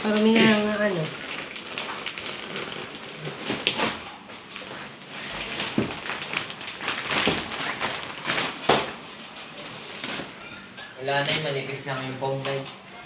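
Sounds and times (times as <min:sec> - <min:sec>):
foam mattress rustling: 0:00.0 - 0:08.9.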